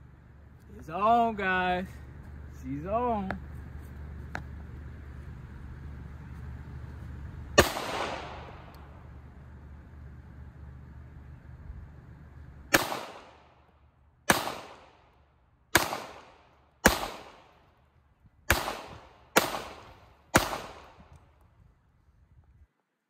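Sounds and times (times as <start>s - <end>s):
gunshots with echo: 7.6s - 8.7s, 12.7s - 13.5s, 14.3s - 15.0s, 15.8s - 17.6s, 18.5s - 21.1s.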